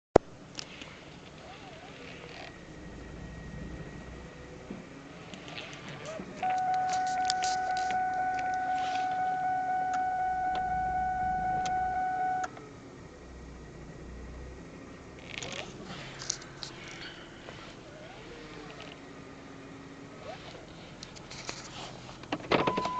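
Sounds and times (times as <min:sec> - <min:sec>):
steady high-pitched whine: 0:00.2 - 0:22.9.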